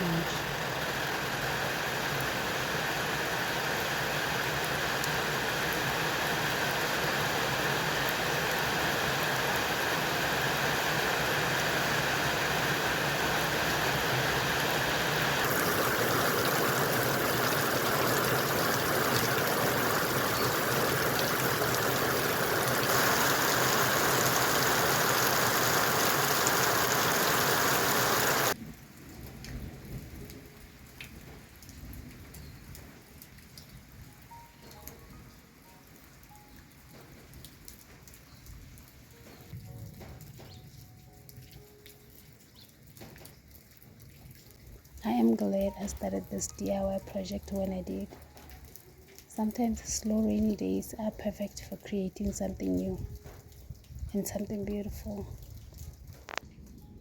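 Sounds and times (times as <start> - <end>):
heavy rain falling: 0.0 - 33.3.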